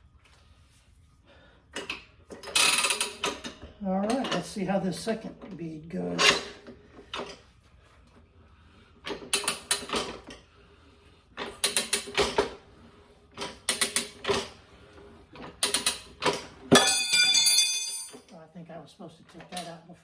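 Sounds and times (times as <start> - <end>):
ringing metal clang: 16.7 - 18.3.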